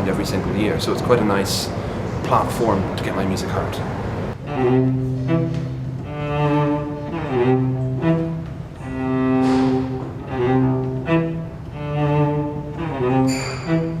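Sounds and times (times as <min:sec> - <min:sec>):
bowed viola notes: 0:04.4 - 0:14.0.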